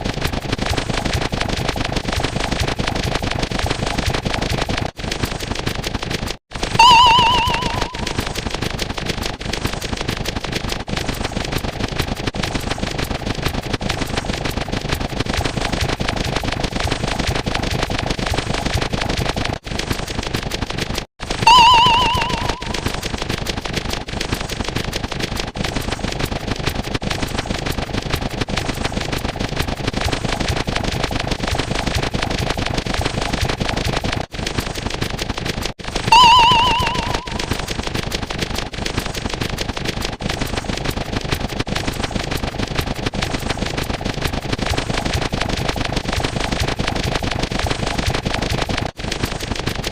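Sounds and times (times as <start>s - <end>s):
rattle of rapid sharp pops: 0.0s - 49.9s
warbling electronic beep: 6.8s - 8.2s, 21.5s - 22.8s, 36.1s - 37.5s.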